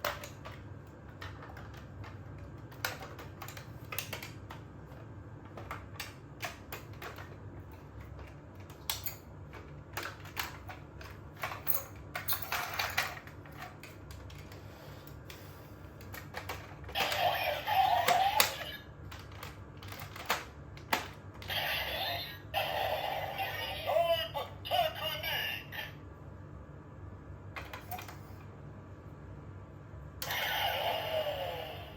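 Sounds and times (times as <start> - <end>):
plastic toy clicks and snaps: 2.7 - 4.6
electronic toy sounds: 16.9 - 18.9, 21.4 - 25.9, 30.2 - 31.9.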